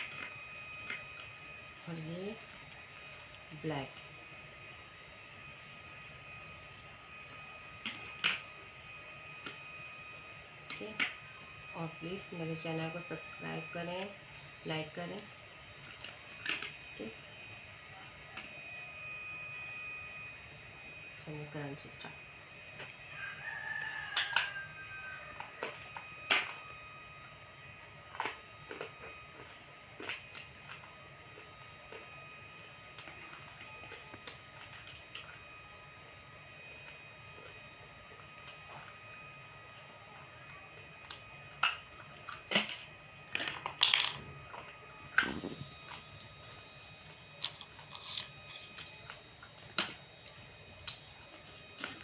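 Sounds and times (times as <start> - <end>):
clay pieces crunching: 47.3 - 52.0.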